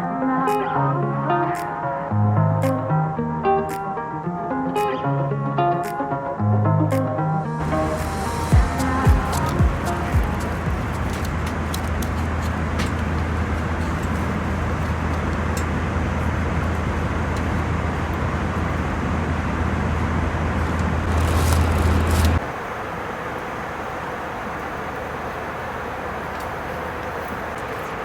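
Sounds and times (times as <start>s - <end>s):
airplane cabin engine rumble: 7.6s - 28.0s.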